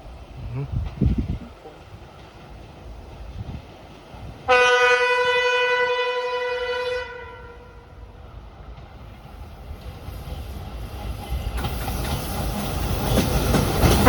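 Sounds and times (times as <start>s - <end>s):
low rumble of locomotive: 0.0s - 14.0s
locomotive horn blast: 4.5s - 7.8s.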